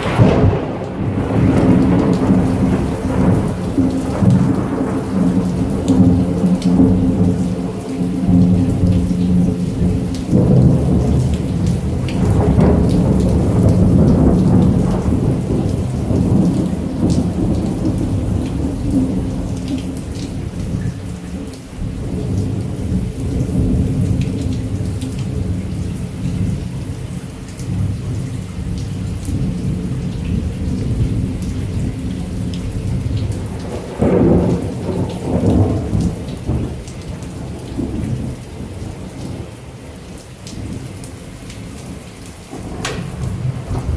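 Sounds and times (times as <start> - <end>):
thunder rolling: 0.0 - 21.0, 29.1 - 39.5, 42.5 - 43.9
heavy rain hiss: 0.0 - 43.9.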